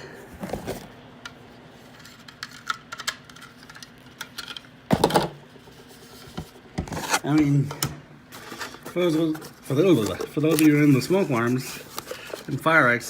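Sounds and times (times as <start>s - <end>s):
plastic smoke alarm being handled: 8.3s - 13.0s.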